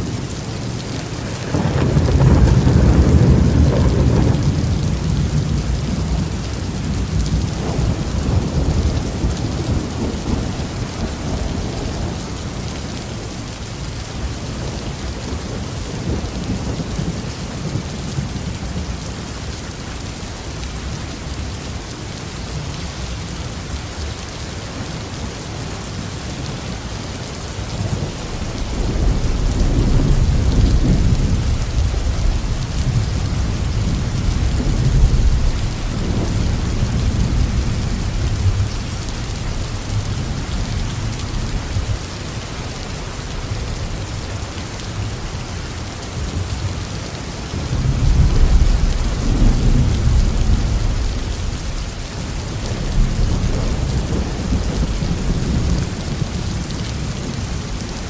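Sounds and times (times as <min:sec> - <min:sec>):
heavy rain falling: 0:00.0 - 0:58.0
thunder rolling: 0:01.1 - 0:12.6, 0:27.6 - 0:42.0, 0:47.6 - 0:57.9.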